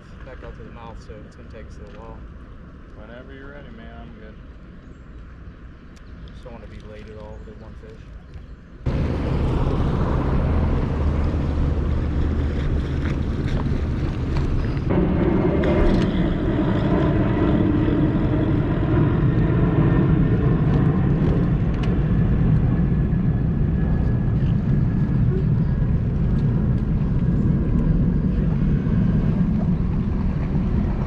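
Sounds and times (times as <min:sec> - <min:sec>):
outboard motor running: 0:08.9 - 0:14.9.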